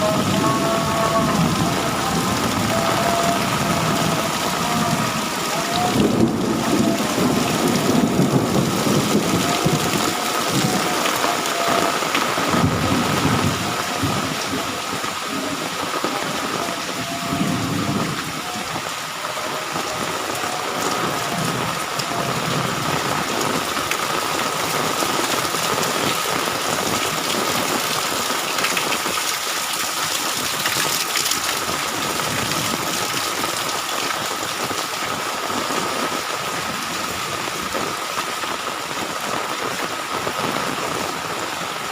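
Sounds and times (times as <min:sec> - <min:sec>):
thunder rumbling: 0:00.0 - 0:29.0
heavy rain pouring: 0:00.0 - 0:41.9.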